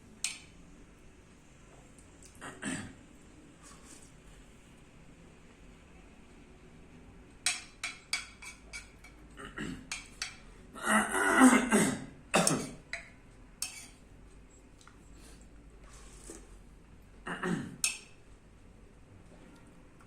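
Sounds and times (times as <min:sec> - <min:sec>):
person clearing throat: 0:02.4 - 0:03.0, 0:09.4 - 0:10.0, 0:10.8 - 0:12.9, 0:17.2 - 0:17.9.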